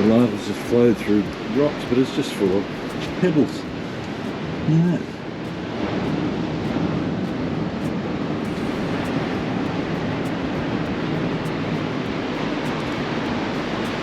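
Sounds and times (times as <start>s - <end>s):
ocean surf rushing: 0.0s - 14.0s.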